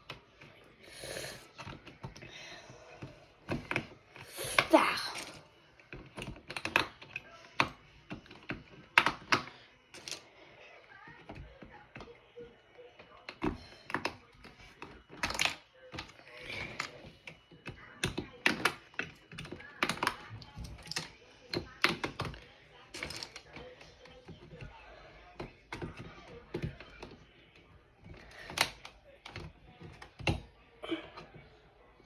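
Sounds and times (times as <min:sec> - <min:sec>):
plastic keycaps clicking: 0:03.0 - 0:10.2.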